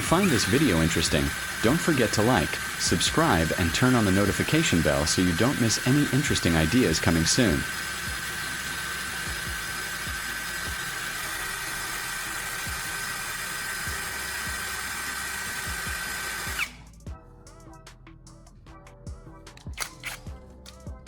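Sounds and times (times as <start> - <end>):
power drill whirring: 0.0 - 17.0, 19.5 - 20.8
background music with beat: 9.3 - 11.5, 12.5 - 21.0.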